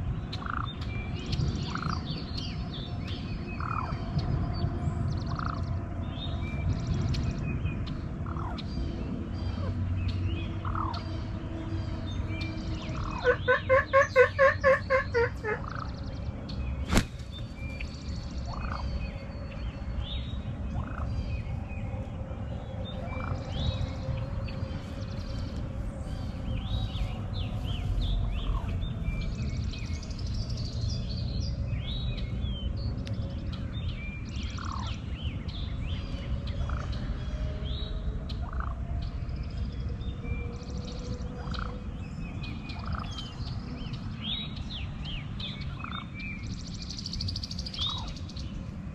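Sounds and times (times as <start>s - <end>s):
small birds chirping: 0.0s - 48.8s
low outdoor background: 0.0s - 48.9s
turkey call notes: 13.0s - 15.8s.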